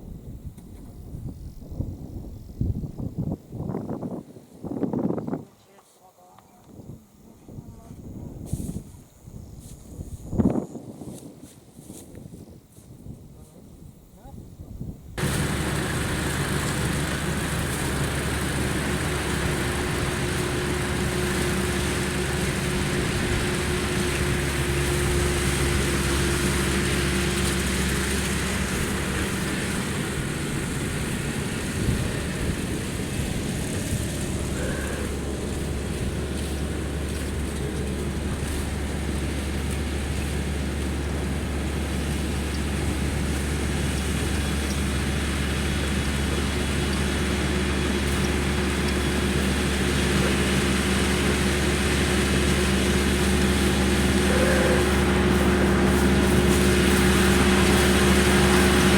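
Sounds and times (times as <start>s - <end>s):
combine harvester drone: 15.2s - 58.9s.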